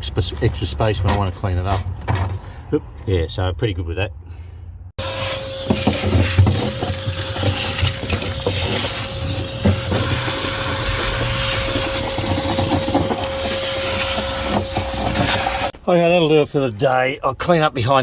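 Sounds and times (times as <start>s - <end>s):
scraping and rattling: 5.0s - 15.8s.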